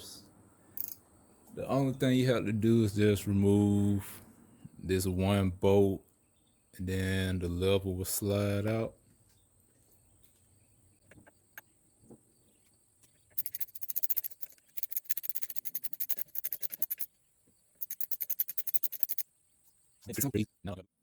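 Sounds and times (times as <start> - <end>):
socket ratchet clicking: 13.4 - 17.1, 17.8 - 19.2.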